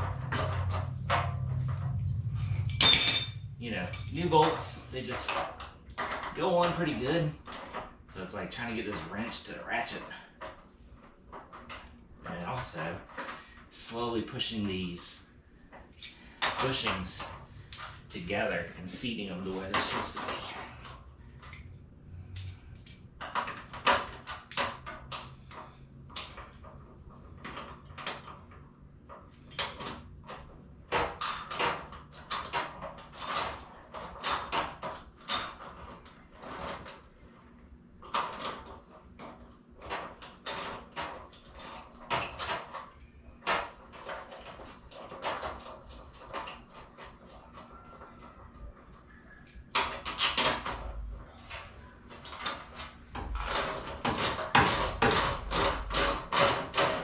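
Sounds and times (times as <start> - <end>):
metal knocks: 0.0 - 6.8.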